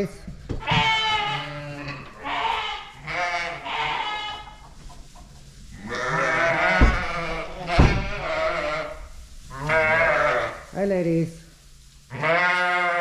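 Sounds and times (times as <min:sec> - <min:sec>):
sheep bleating: 0:00.6 - 0:04.5, 0:05.8 - 0:10.6, 0:12.1 - 0:13.0
low thumps: 0:06.3 - 0:10.6.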